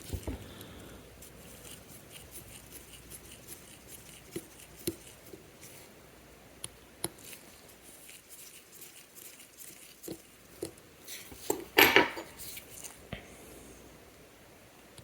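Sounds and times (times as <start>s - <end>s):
metal tools clicking and tapping: 11.4s - 12.4s
tools clattering: 11.4s - 12.4s.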